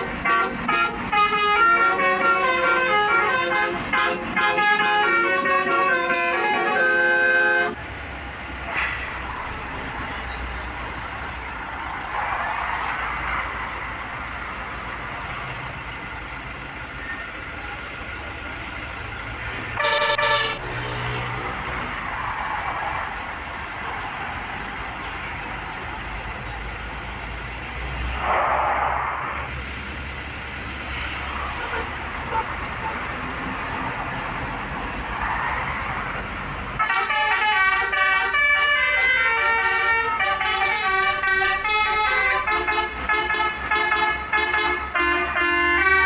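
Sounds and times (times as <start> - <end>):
bus multi-tone horn blast: 0.0 - 7.8, 19.4 - 21.8, 30.9 - 33.6, 36.8 - 46.0
road traffic rumble: 0.0 - 46.0.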